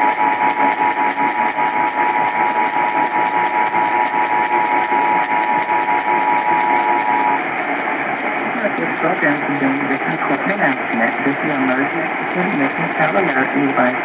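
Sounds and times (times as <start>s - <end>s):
pulsing radio interference: 0.0s - 14.0s
radio static: 0.0s - 14.0s.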